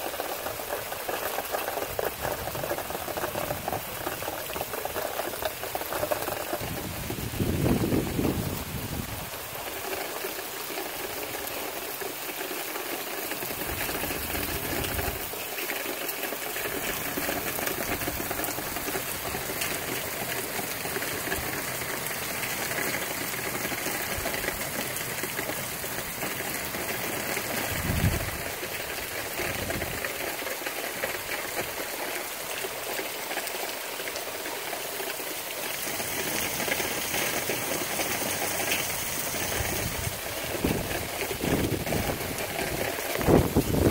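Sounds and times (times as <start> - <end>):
steady rain rushing: 0.0 - 43.9
wind gusts rumbling: 6.5 - 9.3, 27.7 - 28.5, 36.0 - 43.9.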